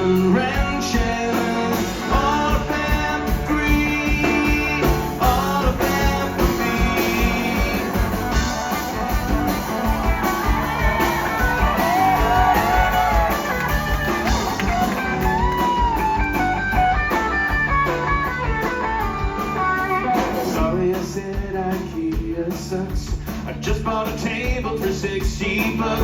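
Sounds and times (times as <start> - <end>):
bass guitar: 0.0 - 26.0
drums: 0.0 - 26.0
guitar melody: 6.0 - 20.7.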